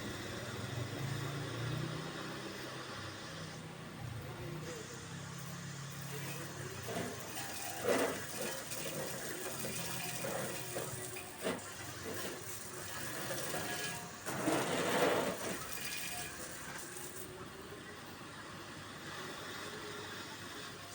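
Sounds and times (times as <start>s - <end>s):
water spraying from hose nozzle: 5.2s - 17.4s.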